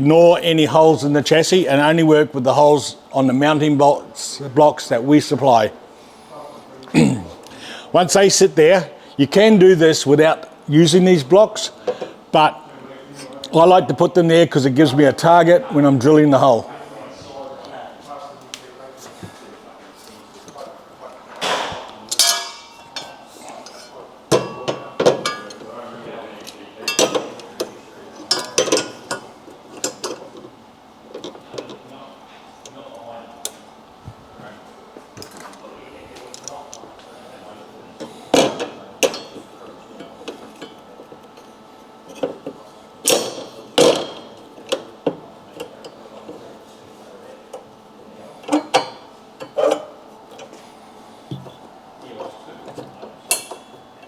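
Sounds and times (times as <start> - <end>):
metal hardware clanking: 21.4 - 25.6.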